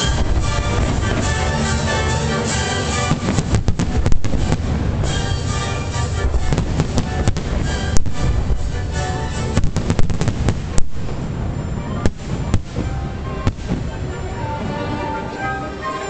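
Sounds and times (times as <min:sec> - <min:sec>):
fireworks bangs and crackles: 0:00.0 - 0:15.4
orchestral music: 0:00.0 - 0:16.0.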